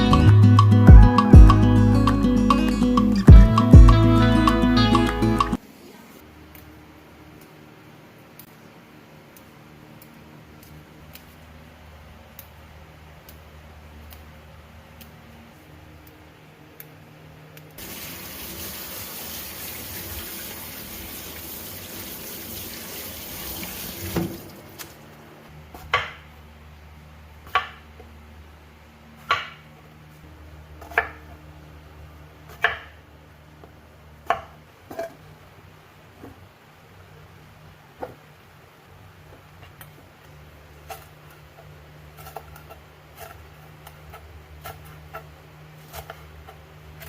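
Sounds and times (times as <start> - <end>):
kitchen tap running: 17.8 - 24.9.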